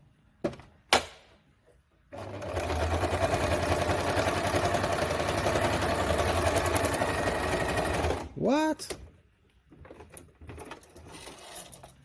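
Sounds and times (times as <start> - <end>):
sewing machine stitching: 2.1 - 8.4.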